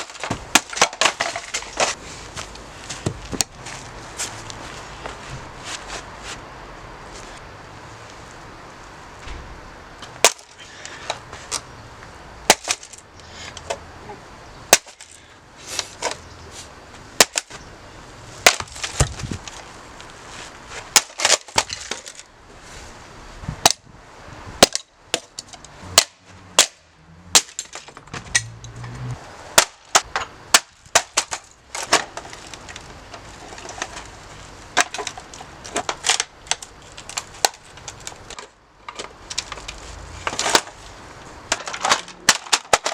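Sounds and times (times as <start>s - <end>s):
breaking sounds: 41.5s - 42.9s.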